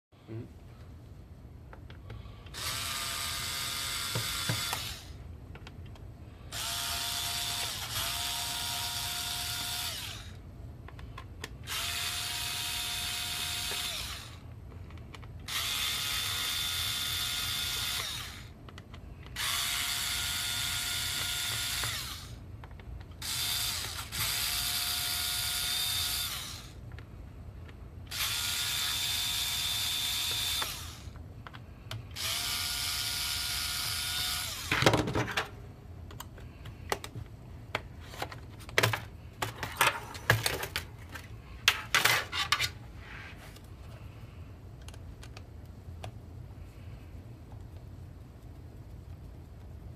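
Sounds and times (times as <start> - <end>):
electric screwdriver motor whine: 2.5 - 5.2, 6.5 - 10.4, 11.6 - 14.4, 15.5 - 18.5, 19.4 - 22.4, 23.2 - 26.8, 28.1 - 31.2, 32.2 - 34.7.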